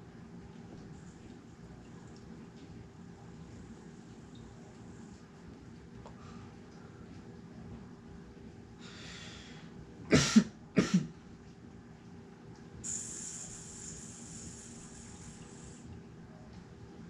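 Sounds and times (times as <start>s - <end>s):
breathy exhale: 8.8s - 9.7s, 12.8s - 15.8s
man coughing hard: 10.1s - 11.1s
steady airy hiss: 12.8s - 15.9s.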